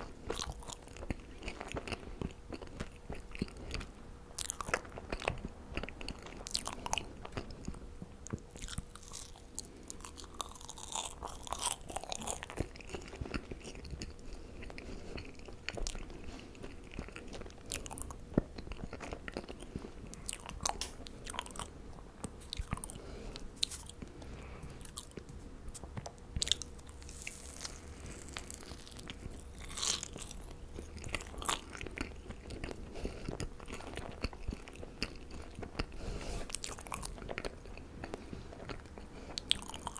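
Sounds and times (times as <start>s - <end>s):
marshmallows being chewed: 0.0s - 39.9s.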